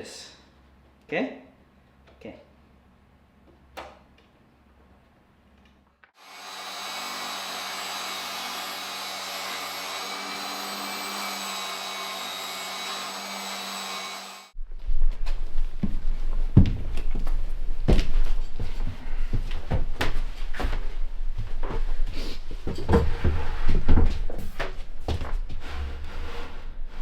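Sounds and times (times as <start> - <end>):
power tool motor whine: 6.2 - 14.6.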